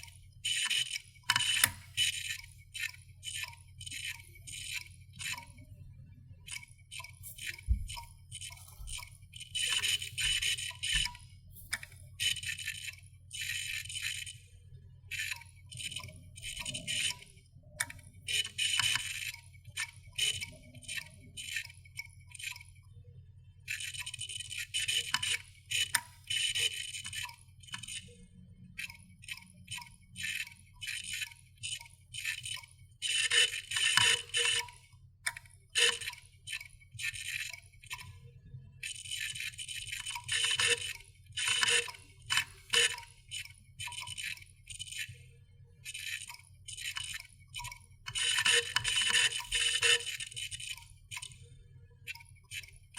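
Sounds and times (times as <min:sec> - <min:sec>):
hard drive clicking: 0:00.0 - 0:05.5, 0:06.5 - 0:14.4, 0:28.8 - 0:38.1, 0:38.8 - 0:45.2, 0:45.9 - 0:51.4.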